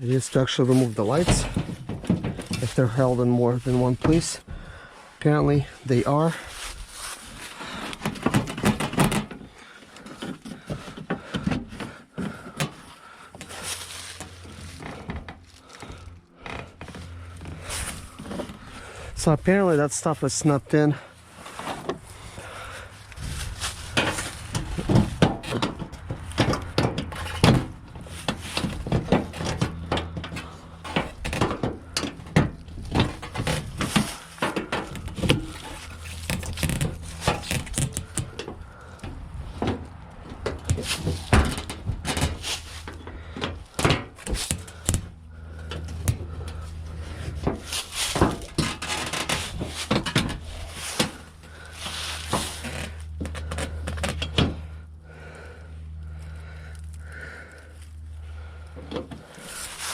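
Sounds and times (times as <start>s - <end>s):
steady low hum: 0.0s - 59.9s
hand tools clicking on plastic trim: 24.0s - 38.5s.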